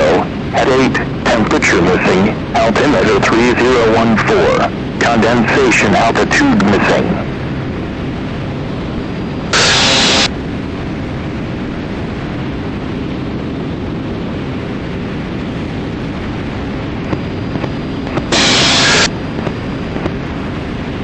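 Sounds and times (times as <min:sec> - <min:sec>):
airplane engine and airflow rush: 0:00.0 - 0:21.0
loud burst of hiss: 0:09.5 - 0:10.3, 0:18.2 - 0:19.1.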